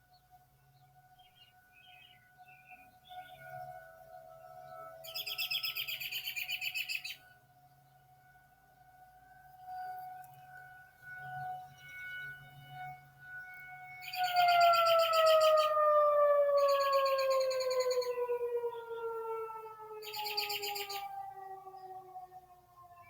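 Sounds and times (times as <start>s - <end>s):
bird high trills: 5.0s - 7.2s, 14.0s - 15.8s, 16.6s - 18.2s, 20.0s - 21.2s
tornado siren winding down: 11.3s - 23.0s.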